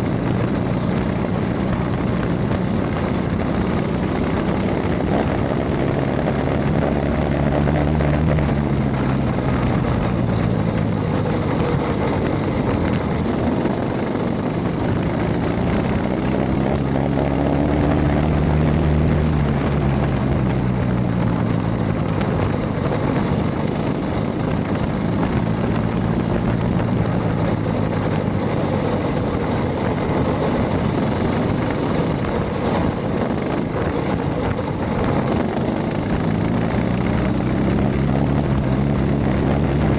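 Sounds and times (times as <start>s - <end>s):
small engine revving: 0.0s - 39.9s.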